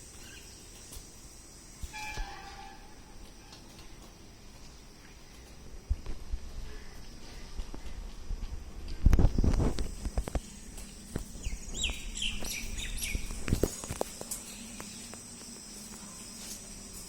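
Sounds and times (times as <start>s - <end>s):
bird chirping falling notes: 11.4s - 13.4s.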